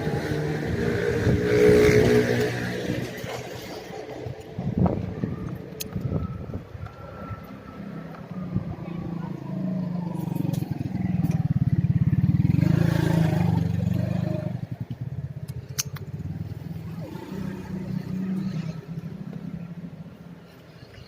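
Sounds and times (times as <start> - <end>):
sharp clicks: 14.9 - 16.1.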